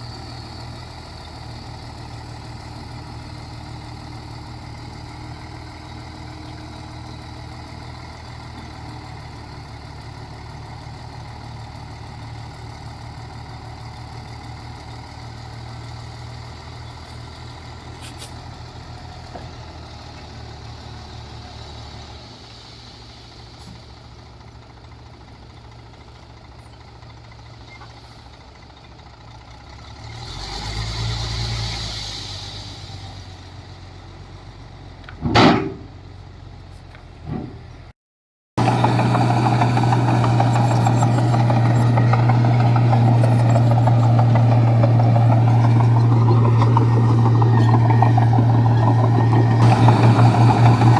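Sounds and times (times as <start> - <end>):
diesel machinery engine running: 0.0 - 37.9, 38.6 - 50.9
hiss: 21.6 - 24.0, 31.0 - 33.4.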